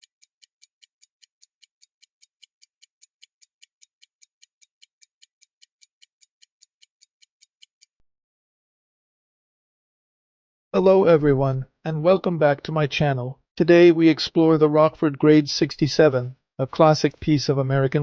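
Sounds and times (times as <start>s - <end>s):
pocket watch ticking: 0.0s - 8.0s.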